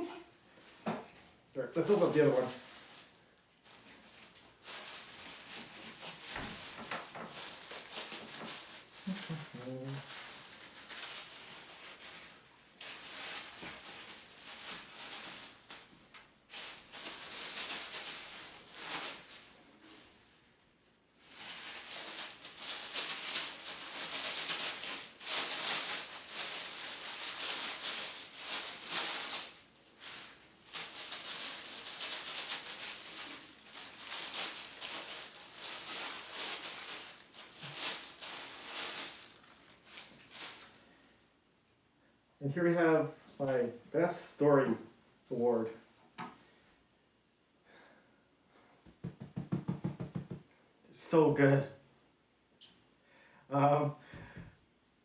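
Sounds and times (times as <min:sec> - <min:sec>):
wrapping paper rustling and tearing: 0:01.7 - 0:41.2.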